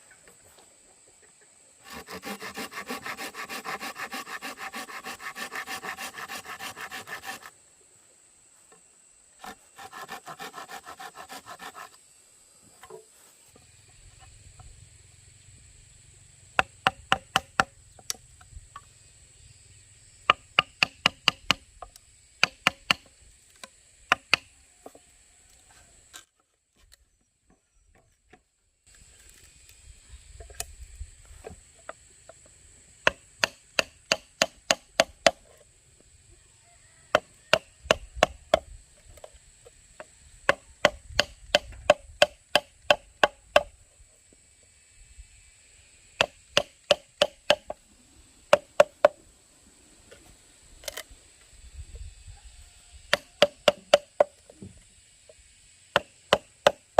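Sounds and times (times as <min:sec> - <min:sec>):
chopping blows on bamboo: 0:16.6 - 0:18.2, 0:20.3 - 0:21.7, 0:22.4 - 0:23.1, 0:24.1 - 0:24.5, 0:33.0 - 0:35.4, 0:37.1 - 0:38.7, 0:40.4 - 0:43.7, 0:46.2 - 0:47.8, 0:48.5 - 0:49.2, 0:53.1 - 0:54.7, 0:55.9 - 0:56.8.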